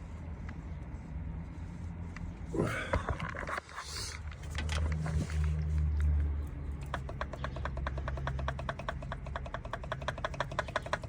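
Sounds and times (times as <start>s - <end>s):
fast even clicking: 6.2s - 11.0s.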